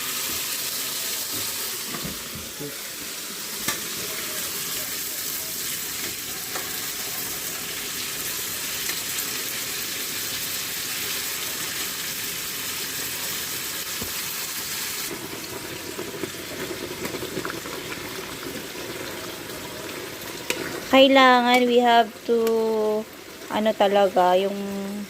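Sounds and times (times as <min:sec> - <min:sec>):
pork sizzling in frying pan: 0:00.0 - 0:25.0.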